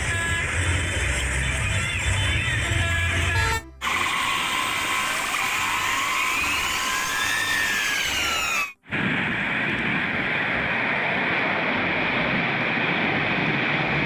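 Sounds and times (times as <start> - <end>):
small motor whirring: 3.8 - 8.7.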